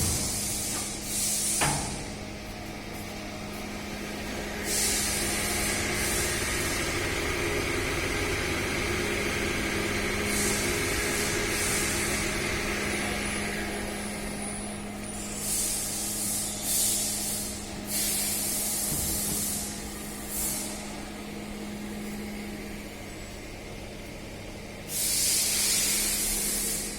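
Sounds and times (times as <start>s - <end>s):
pneumatic valves hissing: 0.0s - 2.1s, 4.6s - 7.0s, 10.1s - 20.9s, 24.9s - 26.9s
low machine hum: 0.0s - 26.9s.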